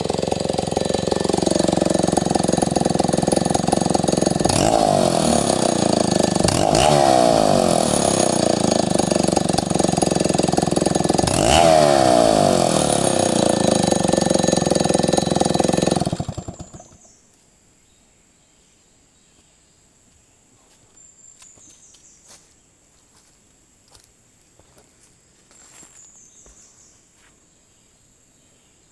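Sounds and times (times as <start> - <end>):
chainsaw engine revving: 0.0 - 17.1
chainsaw running down: 0.0 - 17.2.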